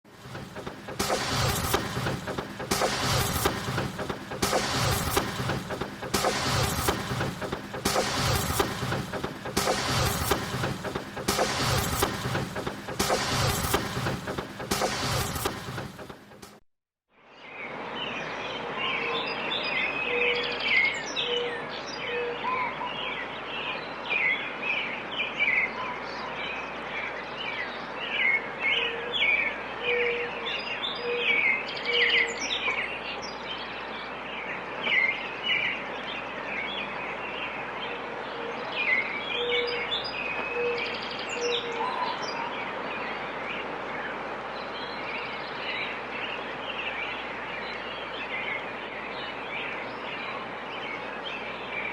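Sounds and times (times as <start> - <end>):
birds chirping and twittering: 17.3 - 51.9
lower run of even bird notes: 17.4 - 51.9.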